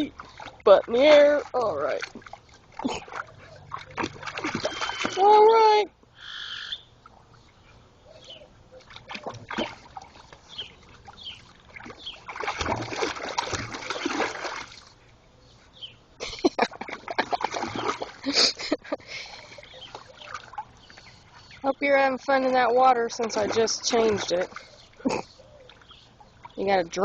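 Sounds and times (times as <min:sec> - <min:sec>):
dog splashing in water: 0:00.0 - 0:05.8, 0:08.8 - 0:14.9, 0:16.7 - 0:18.6, 0:19.4 - 0:20.9, 0:22.2 - 0:24.8.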